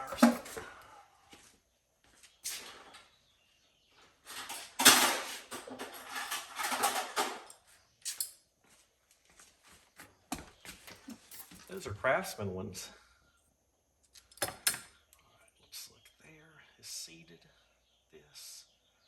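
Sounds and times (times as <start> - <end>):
hand tools clattering and scraping: 0.0 - 1.0, 2.4 - 3.2, 4.0 - 8.4.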